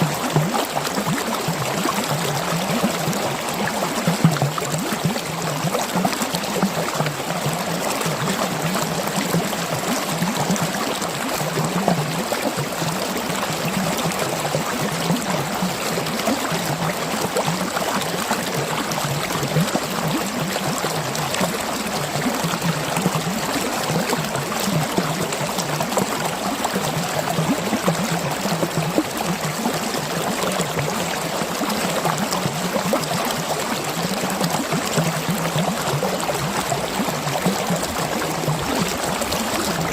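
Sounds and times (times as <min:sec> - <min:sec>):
stream water rushing: 0:00.0 - 0:39.9.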